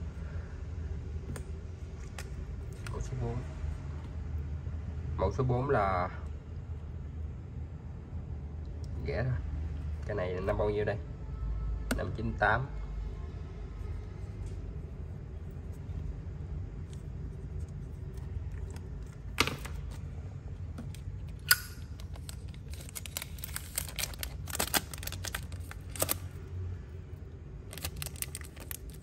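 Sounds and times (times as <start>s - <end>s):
steady low hum: 0.0s - 29.0s
lighter clicks and rattles: 21.4s - 22.3s.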